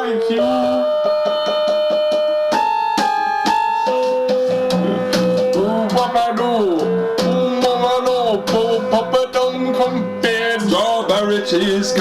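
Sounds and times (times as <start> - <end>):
swooping melody: 0.0 - 10.4
held keyboard notes: 0.0 - 12.0
steady beat: 0.6 - 10.0.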